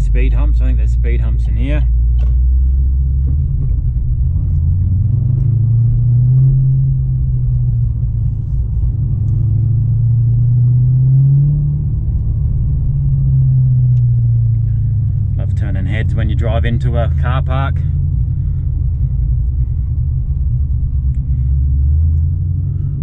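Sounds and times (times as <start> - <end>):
car engine running at low revs: 0.0 - 23.0.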